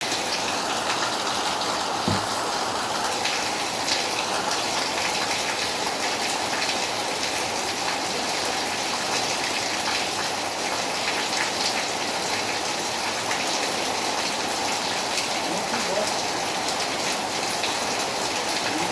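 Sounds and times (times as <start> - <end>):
steady rain falling: 0.0 - 18.9
brief low thump: 2.1 - 2.4.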